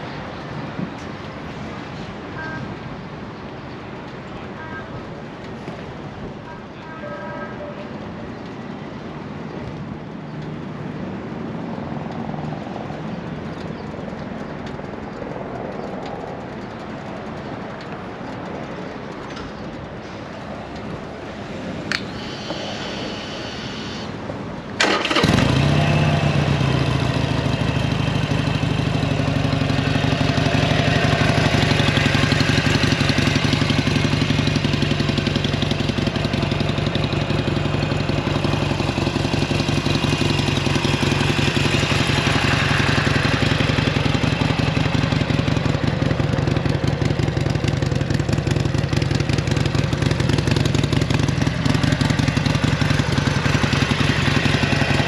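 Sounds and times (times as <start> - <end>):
motorcycle engine starting and idling: 21.9 - 55.0.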